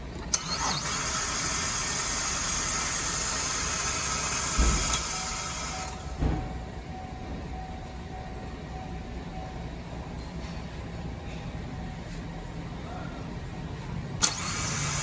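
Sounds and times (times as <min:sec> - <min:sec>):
starter motor whirring: 0:00.2 - 0:06.2, 0:14.2 - 0:15.0.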